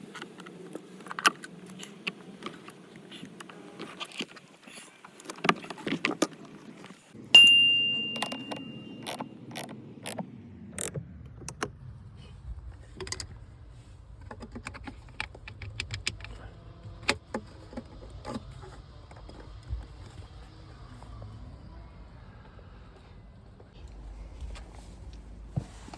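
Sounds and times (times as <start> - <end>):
metal tools clicking and clinking: 7.4 - 9.7.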